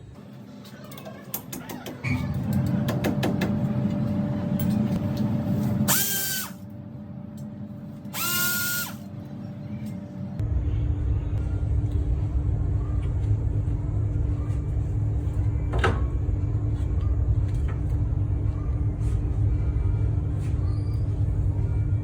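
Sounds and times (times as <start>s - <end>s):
vehicle road rumble and hum: 9.0s - 22.0s.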